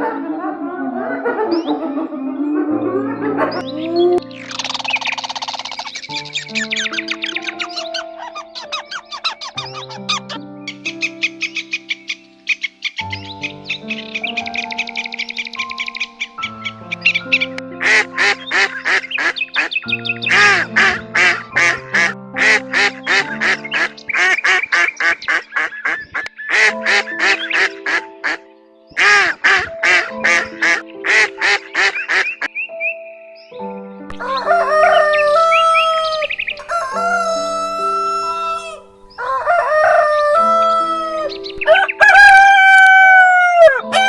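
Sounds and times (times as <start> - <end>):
background music with held notes: 0.0 - 44.0
bird with pitch-bending cries: 1.4 - 22.1, 34.1 - 44.0
ducks quacking: 15.6 - 28.4, 29.0 - 32.5.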